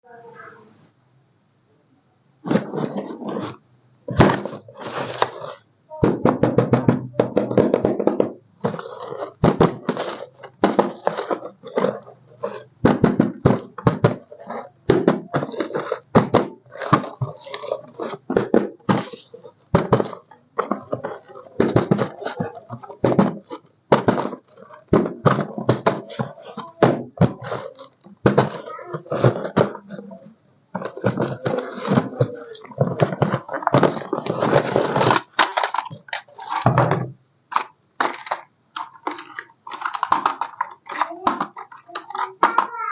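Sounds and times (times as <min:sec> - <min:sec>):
voice: 0:00.0 - 0:00.8, 0:05.4 - 0:08.0, 0:13.5 - 0:16.0, 0:18.9 - 0:35.2, 0:40.6 - 0:42.9
sharp irregular clicks and knocks: 0:04.1 - 0:42.9.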